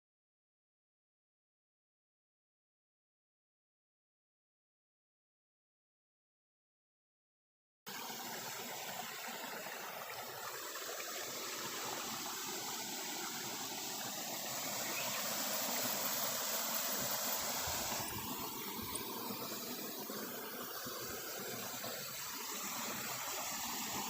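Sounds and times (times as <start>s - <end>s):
small stream running: 7.9s - 24.0s.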